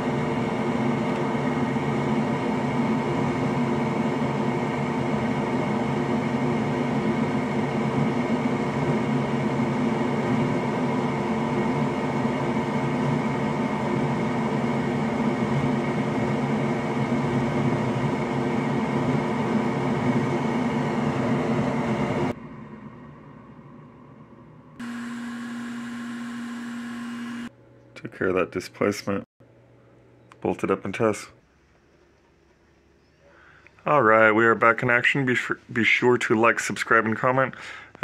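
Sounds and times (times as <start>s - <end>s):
electric blower humming: 0.0s - 22.4s, 24.8s - 27.5s.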